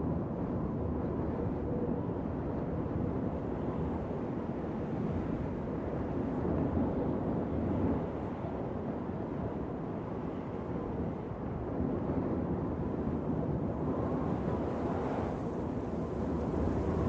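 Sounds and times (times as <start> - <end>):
wind blowing: 11.0 - 17.0.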